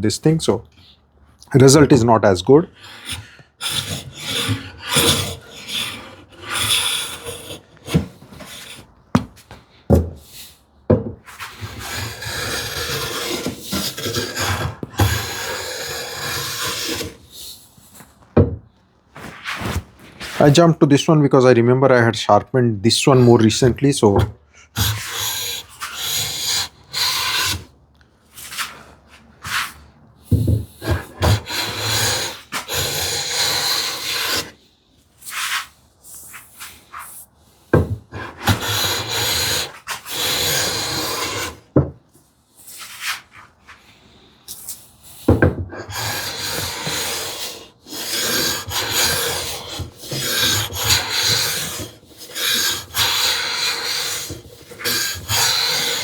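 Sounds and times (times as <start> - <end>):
hand plane cutting shavings: 2.8 - 10.0, 11.3 - 17.3, 24.8 - 27.7, 30.7 - 34.6, 38.1 - 41.8, 45.3 - 56.0.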